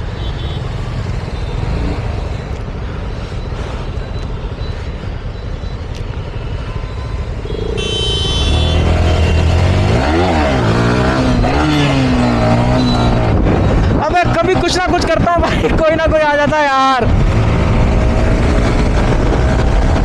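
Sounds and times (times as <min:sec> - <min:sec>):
wind rush and road noise: 0:00.7 - 0:20.0
motorcycle engine revving: 0:07.4 - 0:14.8.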